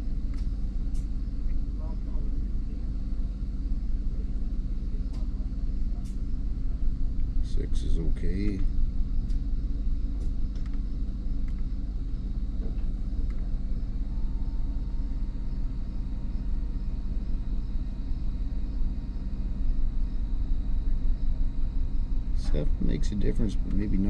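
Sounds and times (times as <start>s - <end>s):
car engine idling: 5.1s - 11.9s.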